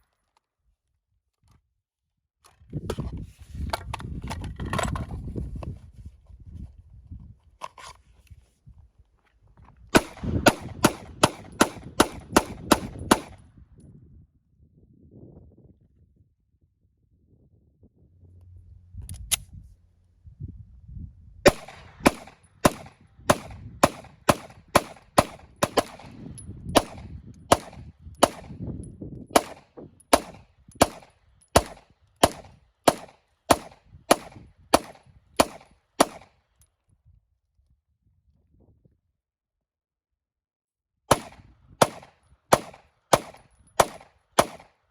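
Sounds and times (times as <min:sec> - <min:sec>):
gunshots: 0:10.0 - 0:13.4, 0:21.5 - 0:26.2, 0:26.8 - 0:28.6, 0:29.4 - 0:36.3, 0:41.1 - 0:44.7.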